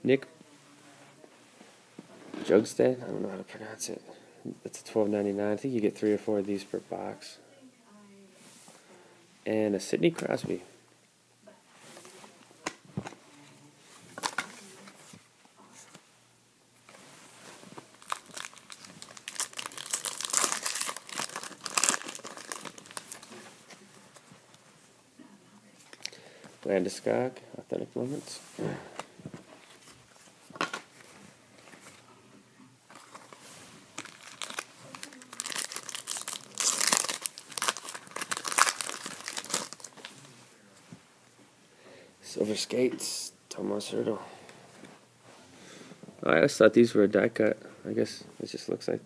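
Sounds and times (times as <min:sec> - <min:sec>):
wrapper crinkling and tearing: 0:17.8 - 0:23.8, 0:32.9 - 0:40.1.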